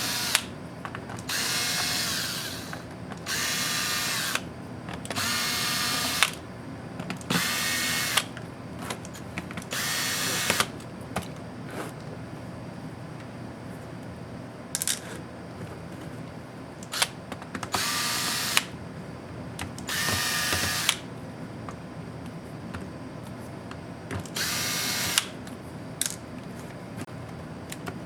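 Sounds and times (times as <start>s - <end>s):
electric screwdriver motor whining: 0.0s - 0.5s, 1.2s - 4.5s, 5.1s - 6.4s, 7.3s - 8.3s, 9.7s - 10.7s, 17.8s - 18.7s, 19.9s - 21.0s, 24.3s - 25.3s.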